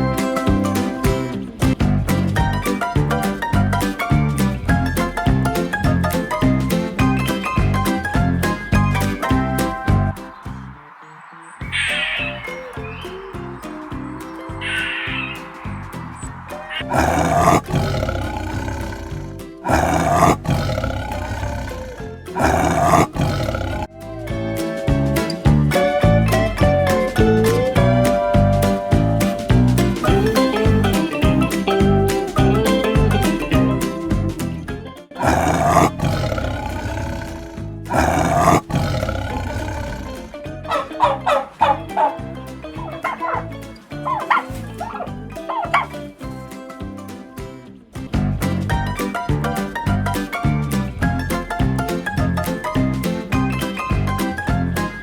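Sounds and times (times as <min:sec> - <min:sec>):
upbeat music: 0:00.0 - 0:10.8, 0:23.1 - 0:34.7
background music: 0:00.0 - 0:55.0
harsh animal call: 0:10.8 - 0:23.9, 0:35.2 - 0:41.5
big cat roaring: 0:16.7 - 0:23.9, 0:35.2 - 0:40.6.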